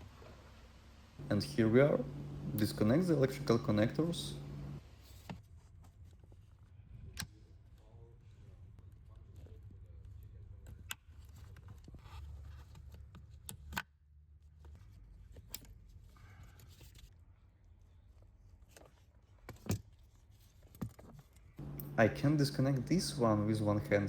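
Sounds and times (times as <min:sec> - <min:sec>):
low steady hum: 0:01.1 - 0:04.9, 0:21.6 - 0:24.0.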